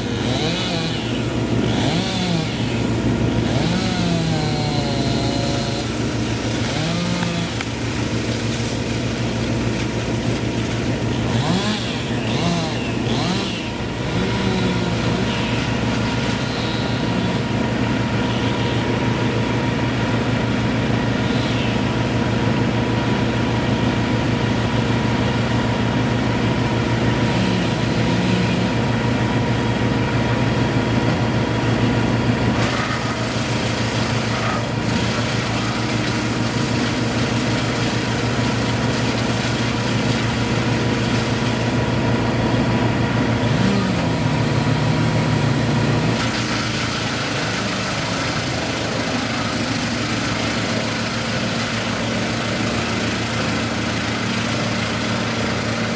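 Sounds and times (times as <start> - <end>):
heavy equipment engine running: 0.0 - 55.9.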